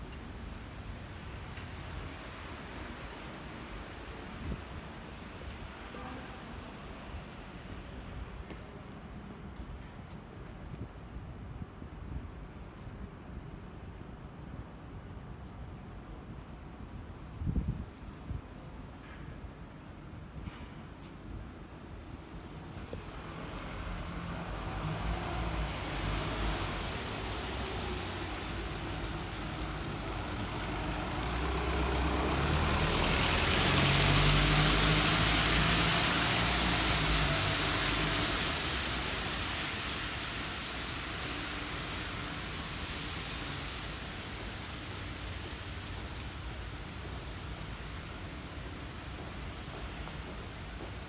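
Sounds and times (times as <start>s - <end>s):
tyre hiss on wet street: 0.0s - 8.2s, 22.6s - 51.0s
vehicle engine hum: 23.0s - 42.7s.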